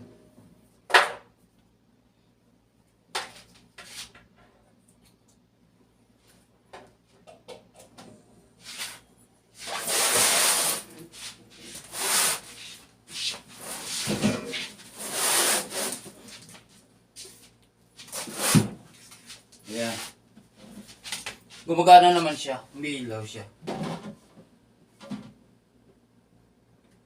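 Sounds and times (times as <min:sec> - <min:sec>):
rubbing and rustling handling noise: 0:08.6 - 0:22.5.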